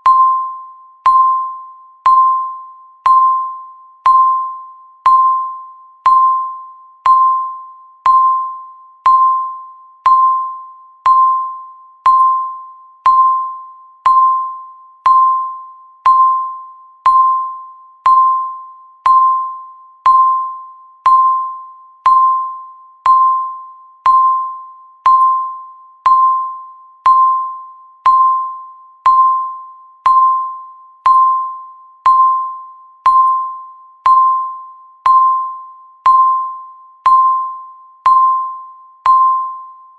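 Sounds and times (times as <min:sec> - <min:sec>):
timer tick with chime tone: 0:00.0 - 0:39.9.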